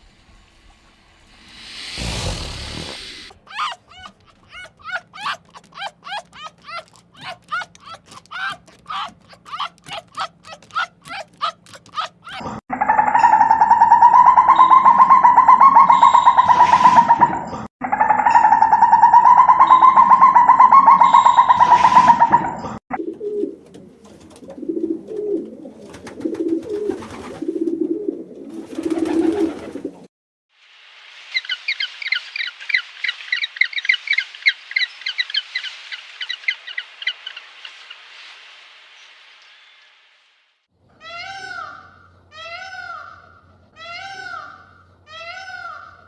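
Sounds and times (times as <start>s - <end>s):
small bird chirping rapidly: 1.2s - 12.4s
dove cooing: 1.4s - 12.6s, 22.9s - 30.1s.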